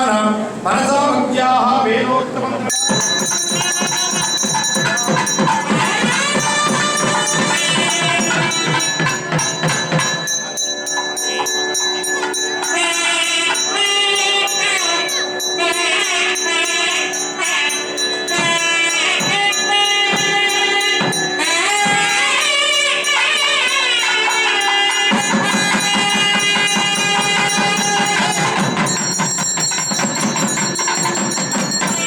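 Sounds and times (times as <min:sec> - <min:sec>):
devotional music with percussion: 0:02.7 - 0:32.0.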